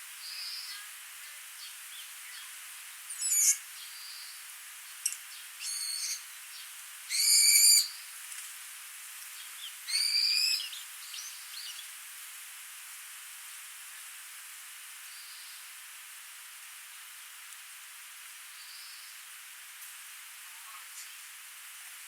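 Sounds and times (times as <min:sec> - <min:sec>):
harsh buzzy bird calls: 0:00.2 - 0:04.4, 0:05.0 - 0:06.3, 0:07.1 - 0:08.0, 0:09.4 - 0:11.8.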